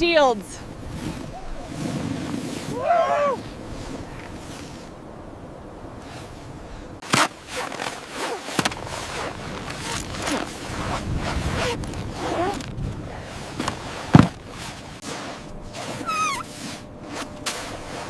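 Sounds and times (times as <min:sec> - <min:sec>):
gear scraping and rustling: 0:00.8 - 0:02.8, 0:06.0 - 0:18.0
thump: 0:14.1 - 0:14.4.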